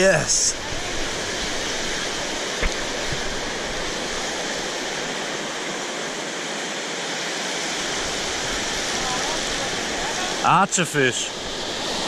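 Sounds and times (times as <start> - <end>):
floodwater rushing through weir: 0.0 - 12.0.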